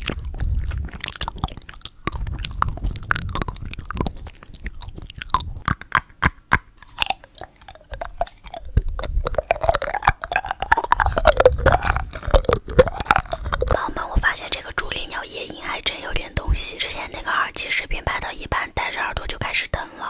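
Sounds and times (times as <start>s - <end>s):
chewing and biting candy: 0.0s - 17.3s
wet mouth clicks: 0.0s - 20.0s.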